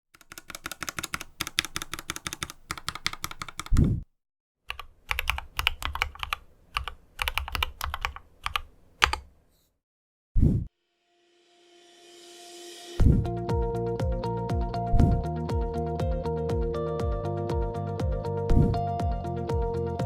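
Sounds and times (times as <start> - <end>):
mechanical keyboard typing: 0.2 - 4.0, 4.7 - 9.3.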